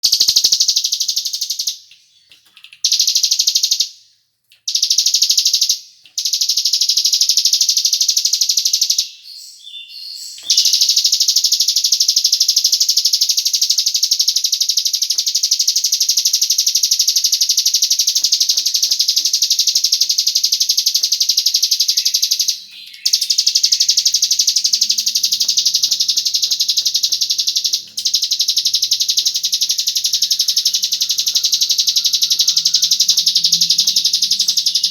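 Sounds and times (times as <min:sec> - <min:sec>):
high-pitched bird trilling: 0:08.8 - 0:16.4, 0:17.0 - 0:34.9.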